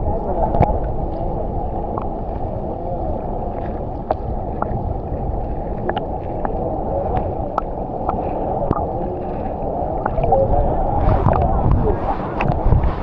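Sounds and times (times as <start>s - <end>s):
water splashes and drips: 3.5s - 13.0s.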